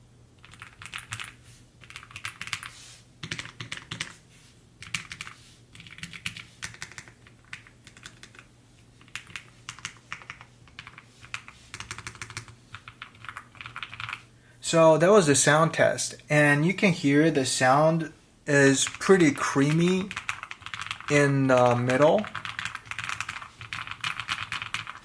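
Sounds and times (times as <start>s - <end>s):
mechanical keyboard typing: 0.4s - 4.1s, 4.8s - 8.5s, 9.1s - 14.2s, 18.8s - 19.1s, 19.7s - 25.0s.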